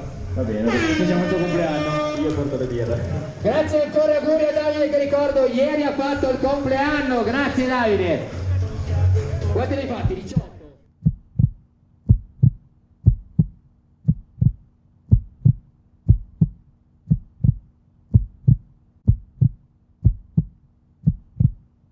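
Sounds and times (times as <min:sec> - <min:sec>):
heartbeat double thump: 0:10.0 - 0:21.7.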